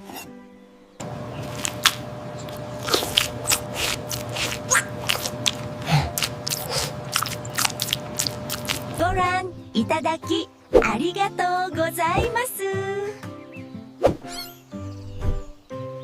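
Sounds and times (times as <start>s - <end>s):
crunchy chewing: 1.0s - 9.3s
steady low hum: 1.0s - 9.7s.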